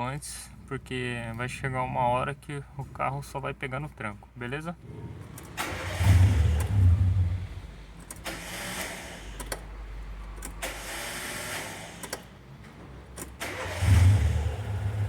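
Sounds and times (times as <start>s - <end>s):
car starter cranking with clicks: 5.2s - 7.1s, 8.0s - 9.7s, 10.4s - 15.0s.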